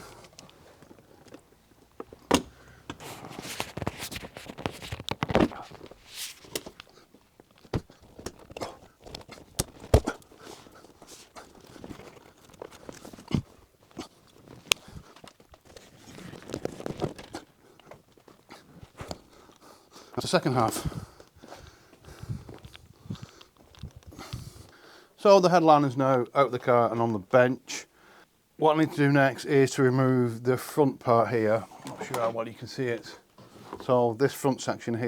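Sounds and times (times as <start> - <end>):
rustling and scraping: 0.0 - 19.6, 31.4 - 33.9.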